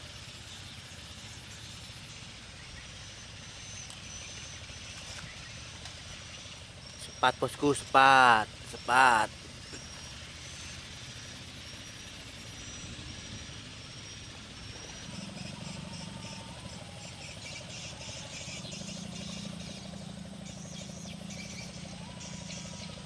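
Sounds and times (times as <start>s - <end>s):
insects chirping in trills: 0.0s - 23.0s
low engine hum: 0.0s - 23.0s.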